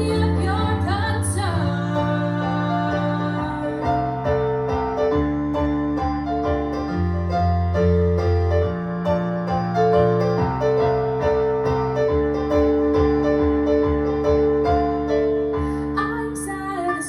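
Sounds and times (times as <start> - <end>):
piano playing slow chords: 0.0 - 17.0.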